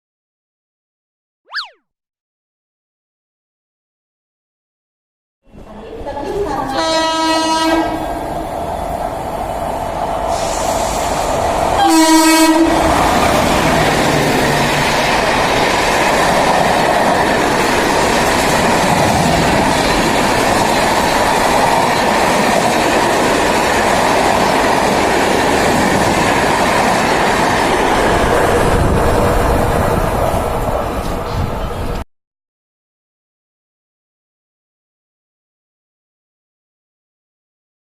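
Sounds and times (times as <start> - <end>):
locomotive horn blast: 6.8 - 8.0, 11.8 - 12.8
train wheels rushing on rail: 7.7 - 32.0.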